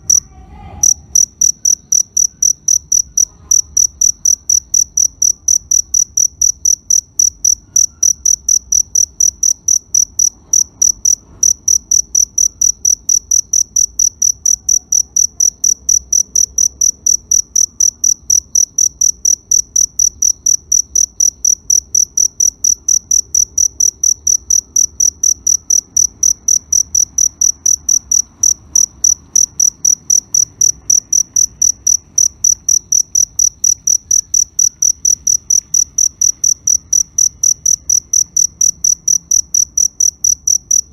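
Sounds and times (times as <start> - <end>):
faint low hum: 0.0 - 6.0
cricket chirping: 0.0 - 40.9.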